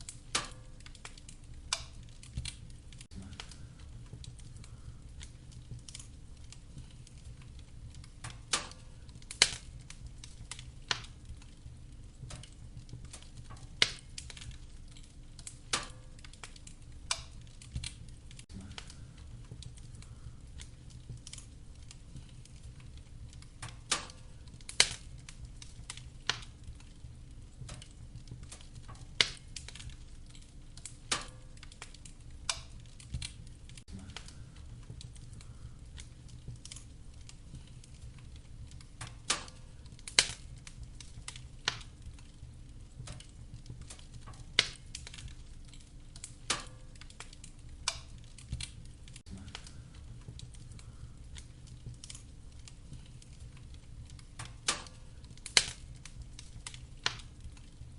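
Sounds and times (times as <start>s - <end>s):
fire crackling and popping: 0.0s - 57.9s
low rumble of flames: 0.0s - 57.9s.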